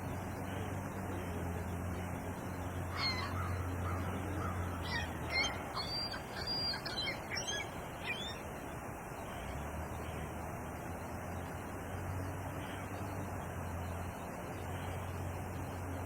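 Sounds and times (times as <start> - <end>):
birds chirping and whistling: 4.8 - 8.4.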